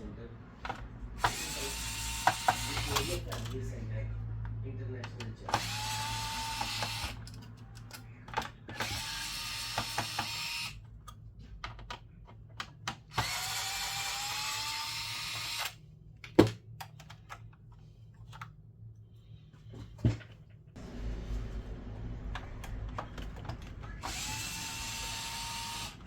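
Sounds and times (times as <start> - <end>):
electric screwdriver whining: 1.2 - 3.3, 5.5 - 7.2, 8.7 - 10.8, 13.1 - 15.8, 23.9 - 26.0.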